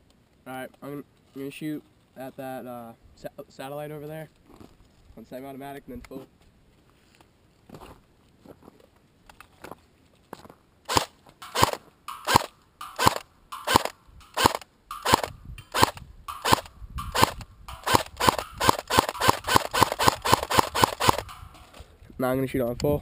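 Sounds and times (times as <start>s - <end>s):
airsoft rifle single shots: 10.9s - 21.4s.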